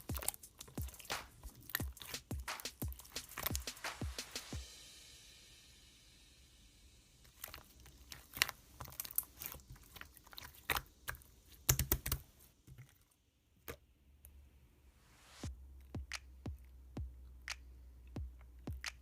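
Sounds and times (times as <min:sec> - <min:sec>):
slime popping and crackling: 0:00.0 - 0:04.0, 0:07.3 - 0:12.9.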